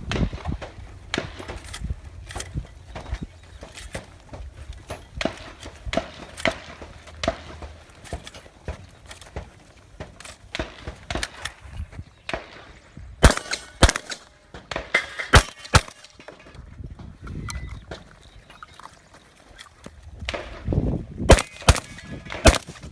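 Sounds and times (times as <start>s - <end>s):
shotgun shots: 0.0s - 3.2s, 5.2s - 11.6s, 12.2s - 16.5s, 20.2s - 22.9s.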